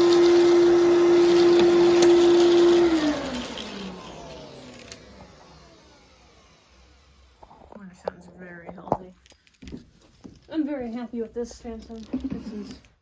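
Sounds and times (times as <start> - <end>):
vacuum cleaner whining and winding down: 0.0 - 8.4.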